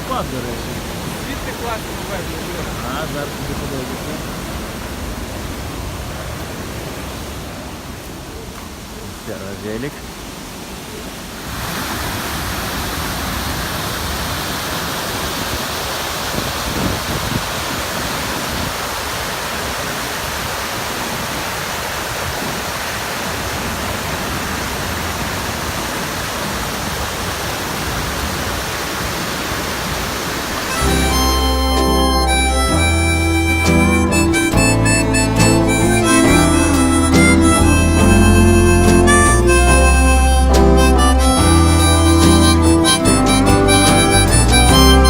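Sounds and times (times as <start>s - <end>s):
waterfall rushing: 0.0s - 45.0s.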